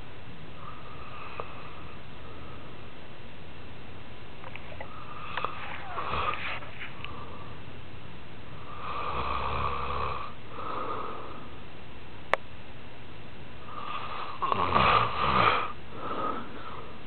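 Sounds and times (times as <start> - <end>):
steady hiss: 0.0 - 17.0
man snoring: 5.0 - 7.2, 8.6 - 11.4, 13.7 - 16.9.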